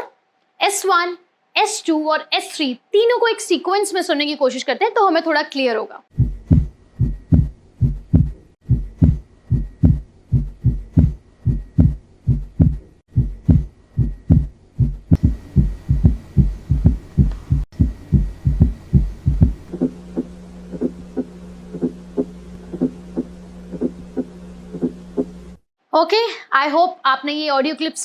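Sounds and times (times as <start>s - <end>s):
heartbeat thuds in gallop rhythm: 6.1s - 25.4s
steady hum: 6.2s - 25.7s.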